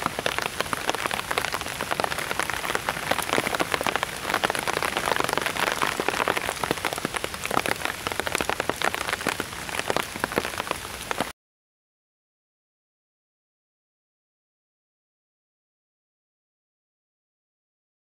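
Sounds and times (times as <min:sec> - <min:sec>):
rain pattering on plastic sheet: 0:00.0 - 0:11.3.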